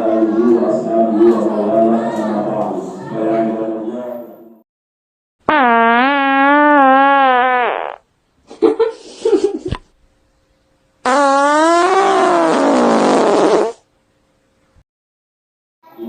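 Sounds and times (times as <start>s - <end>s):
fart sounds: 5.5s - 8.0s, 11.0s - 13.9s.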